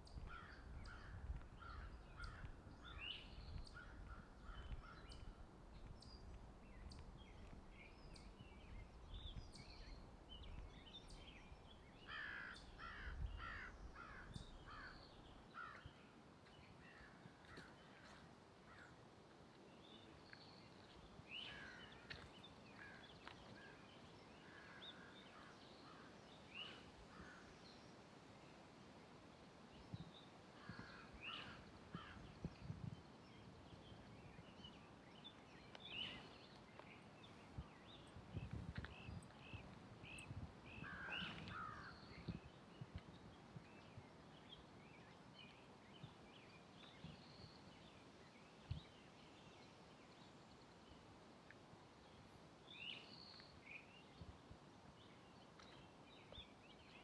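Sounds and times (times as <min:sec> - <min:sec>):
birds calling and chirping: 0:00.0 - 0:16.0, 0:30.6 - 0:47.8
soft footsteps on trail: 0:00.0 - 0:27.8, 0:29.8 - 0:49.6, 0:51.1 - 0:57.0.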